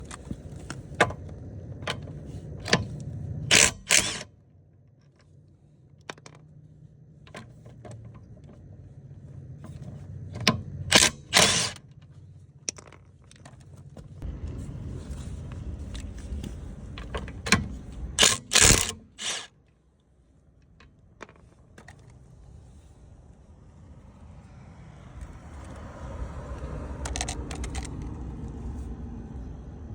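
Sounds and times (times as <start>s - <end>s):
low steady hum: 0.0s - 24.1s
impact driver hammering: 3.5s - 4.2s, 10.9s - 11.8s, 18.2s - 19.5s.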